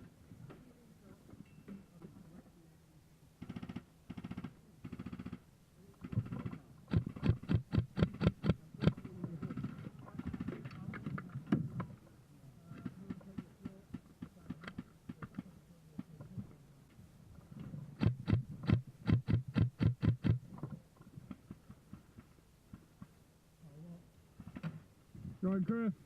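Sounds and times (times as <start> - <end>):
airsoft gun rapid shots: 3.4 - 5.4.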